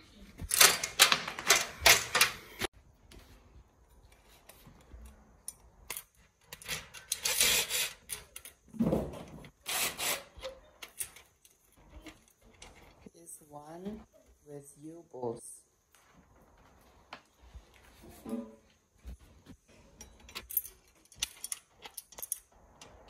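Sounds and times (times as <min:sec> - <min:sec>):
rubbing and scraping of metal parts: 0:05.5 - 0:08.7.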